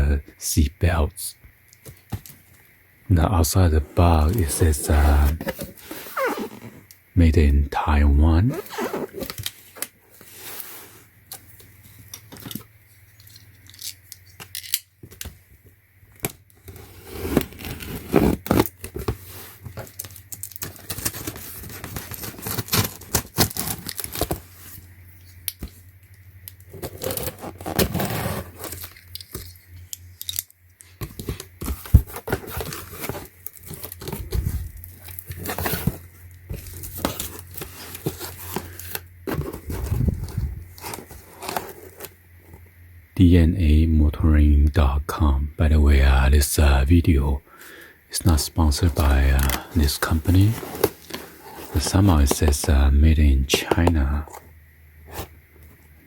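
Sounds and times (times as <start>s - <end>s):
packaging tearing and crinkling: 19.8s - 24.5s.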